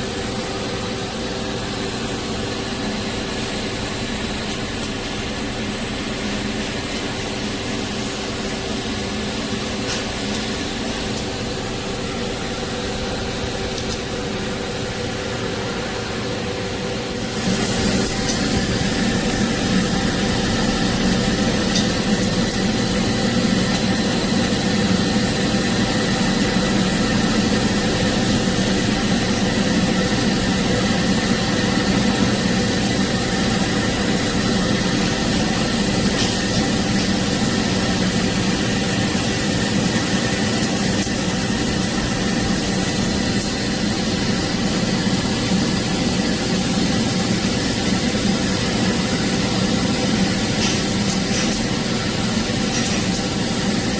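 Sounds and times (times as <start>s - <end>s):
welding arc hum and hiss: 0.0s - 53.9s.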